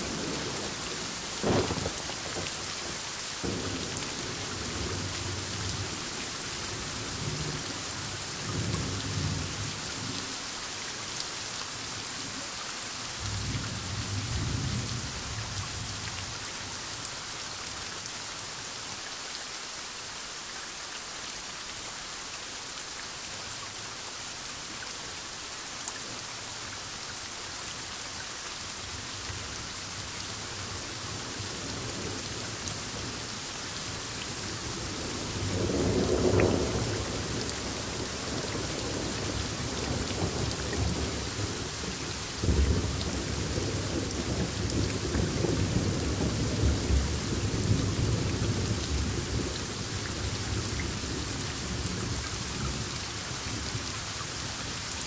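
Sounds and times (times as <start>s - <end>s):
heavy rain falling: 0.0s - 55.0s
rolling thunder: 1.4s - 2.6s.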